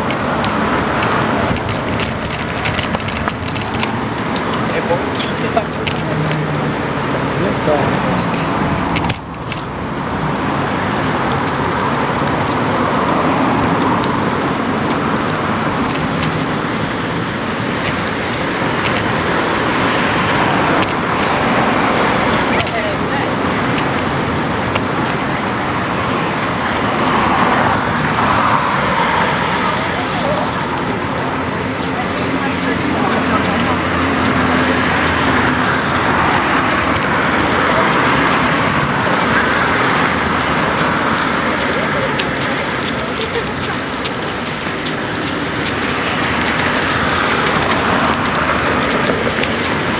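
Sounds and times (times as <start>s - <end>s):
small clicks and rattles: 0.0s - 7.3s, 8.9s - 26.6s
rushing noise of bicycle ride: 0.0s - 49.9s
traffic noise: 0.0s - 49.9s.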